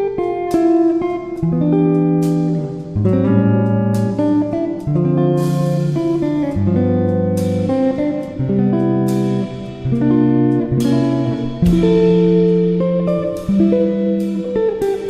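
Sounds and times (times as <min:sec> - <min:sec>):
guitar chords strummed: 0:00.0 - 0:15.0.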